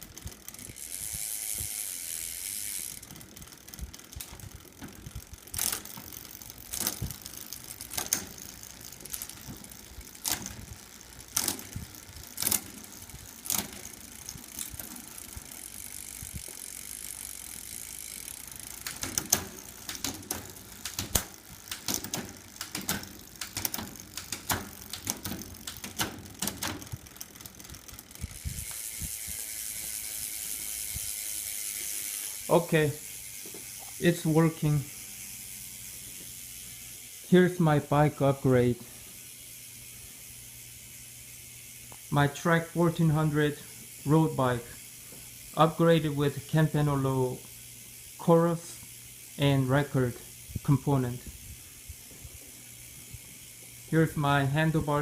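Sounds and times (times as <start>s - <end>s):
bicycle gear change clicks: 0.0s - 36.9s, 41.6s - 44.5s
freewheel ratchet buzzing: 0.0s - 55.0s.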